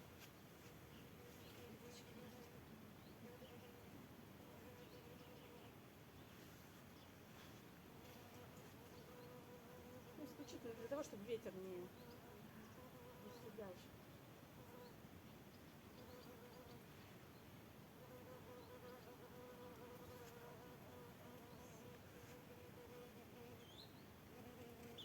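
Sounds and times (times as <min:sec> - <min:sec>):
flying insect buzzing: 0:08.0 - 0:13.6, 0:18.0 - 0:23.7, 0:24.3 - 0:25.0.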